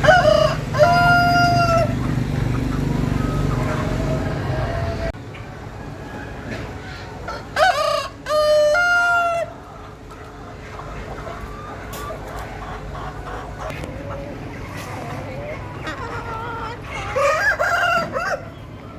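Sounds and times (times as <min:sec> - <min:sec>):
rooster crowing: 0:00.0 - 0:02.0, 0:03.7 - 0:05.1, 0:17.2 - 0:18.5
chicken clucks: 0:00.0 - 0:18.9.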